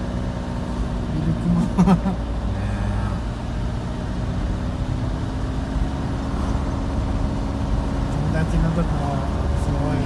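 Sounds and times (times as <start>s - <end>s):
car engine and road noise: 0.0s - 10.0s.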